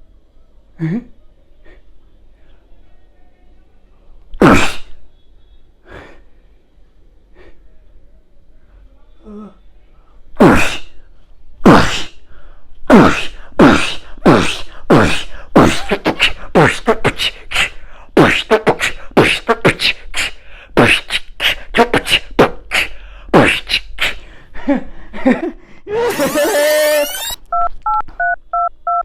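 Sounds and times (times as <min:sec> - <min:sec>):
man sneezing rhythmically: 0:04.4 - 0:05.0, 0:10.3 - 0:11.0, 0:11.6 - 0:26.7.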